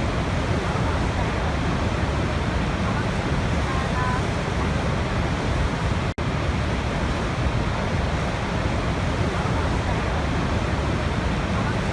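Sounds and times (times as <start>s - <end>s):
loud rush of falling water: 0.0s - 11.9s.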